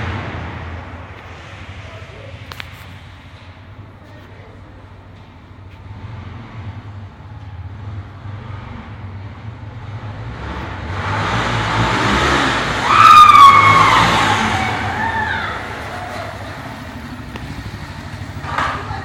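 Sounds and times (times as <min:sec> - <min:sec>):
motorcycle engine approaching: 0:03.0 - 0:19.0
high squeal sliding down: 0:12.0 - 0:17.1.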